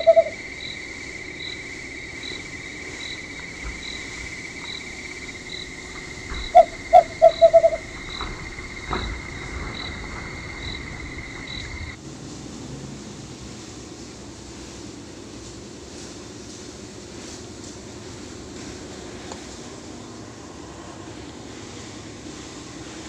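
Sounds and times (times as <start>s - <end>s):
cricket trilling: 0.0s - 12.0s
insect chirping: 0.0s - 12.0s.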